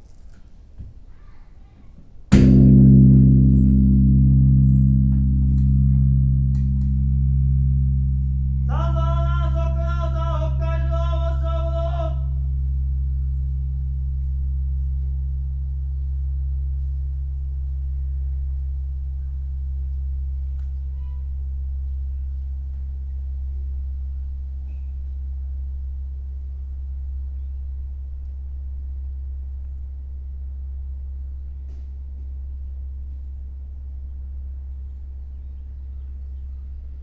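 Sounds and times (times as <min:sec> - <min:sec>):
temple bell humming: 0:02.3 - 0:22.3
wavering pitched tone: 0:02.4 - 0:20.0.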